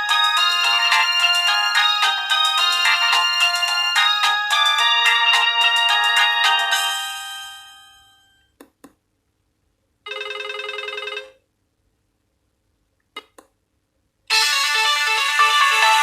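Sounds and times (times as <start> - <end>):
phone ringtone melody: 0.0 - 8.3, 10.1 - 11.4, 14.3 - 16.0.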